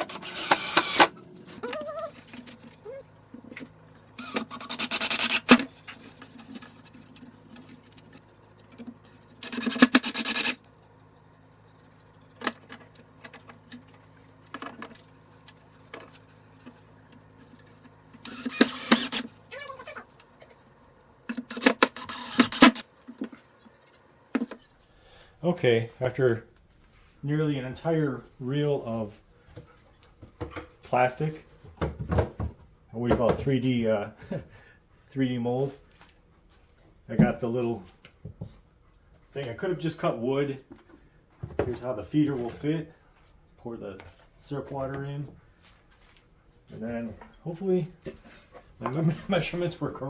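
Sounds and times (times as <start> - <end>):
rasping bursts of motor noise: 0.0 - 1.6, 3.8 - 8.2, 9.2 - 10.7, 15.1 - 20.6, 21.3 - 23.0
printer motors and fans humming: 0.0 - 23.3.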